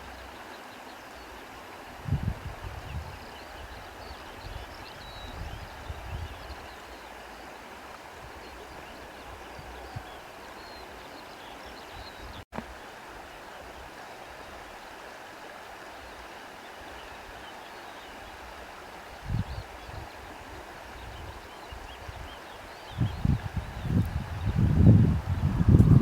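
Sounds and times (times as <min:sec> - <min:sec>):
wind blowing through grass: 0:00.0 - 0:26.0
wind buffeting microphone: 0:02.0 - 0:06.8, 0:19.2 - 0:26.0.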